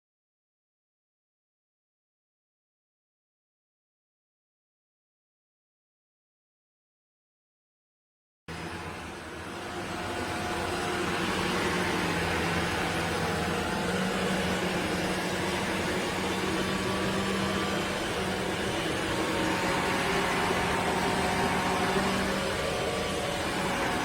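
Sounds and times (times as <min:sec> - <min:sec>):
vacuum cleaner whirring: 0:08.5 - 0:24.0.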